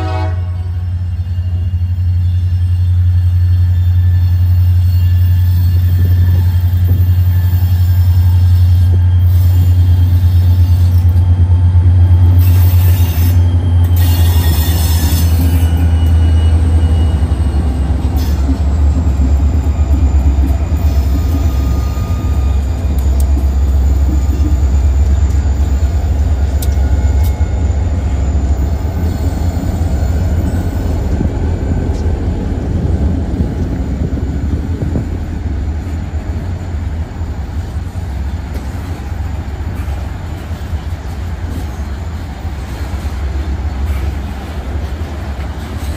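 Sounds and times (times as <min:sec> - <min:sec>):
train wheels rumbling on rail: 0:00.0 - 0:45.9
faint wheel squeal: 0:12.4 - 0:18.5.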